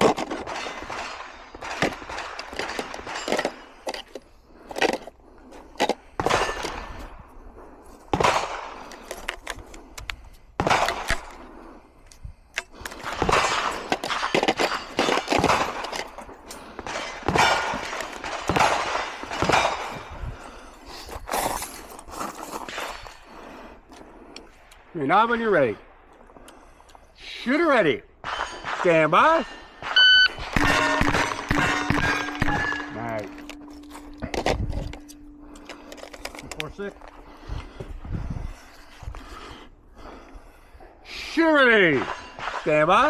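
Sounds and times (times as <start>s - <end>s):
rifle gunshots: 8.1s - 8.8s, 13.1s - 15.9s, 16.8s - 20.1s, 29.8s - 33.3s.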